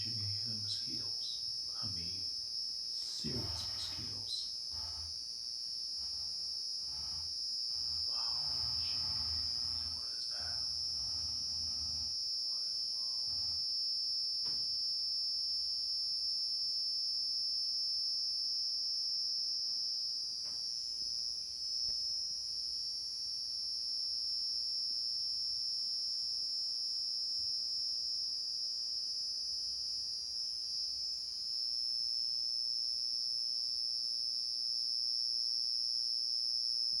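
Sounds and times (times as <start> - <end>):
crickets trilling: 0.0 - 20.2.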